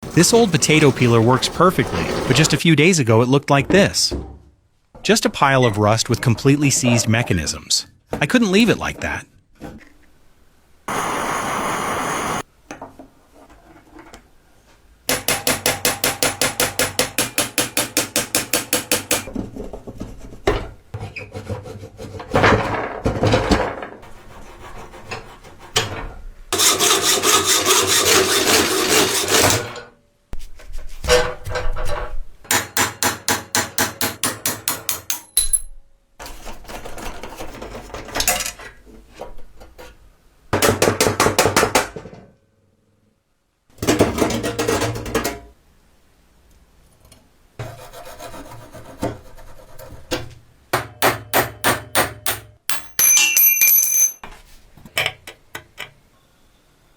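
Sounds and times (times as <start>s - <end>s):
rapid filing strokes on metal: 24.0s - 25.8s, 26.6s - 29.6s, 47.6s - 50.0s.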